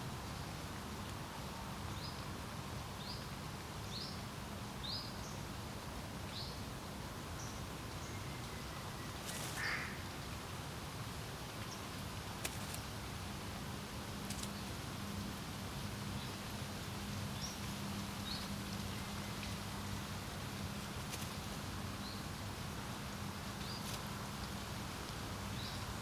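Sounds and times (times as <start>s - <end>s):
low call or rustle: 0.0s - 26.0s
wind: 0.0s - 26.0s.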